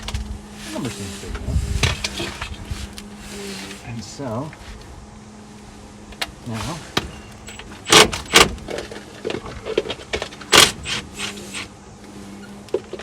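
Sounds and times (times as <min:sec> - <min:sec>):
tool clicks and scrapes: 0:06.5 - 0:13.0
sharp metal knocks: 0:07.0 - 0:08.6.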